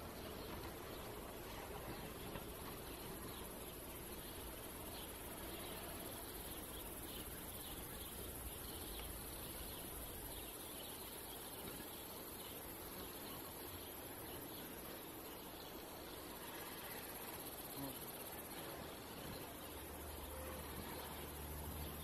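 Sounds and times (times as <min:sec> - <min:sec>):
high-pitched insect buzz: 0:16.7 - 0:18.4.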